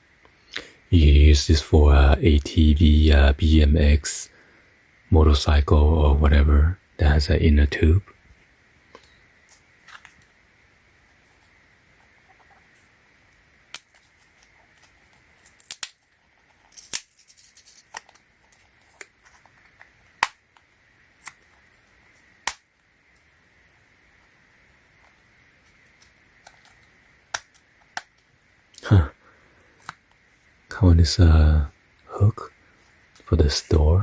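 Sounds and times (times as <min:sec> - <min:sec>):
plastic packaging clicks and snaps: 0:13.7 - 0:21.5, 0:22.4 - 0:22.8, 0:26.0 - 0:28.3
plastic crinkling and rattling: 0:13.8 - 0:20.2.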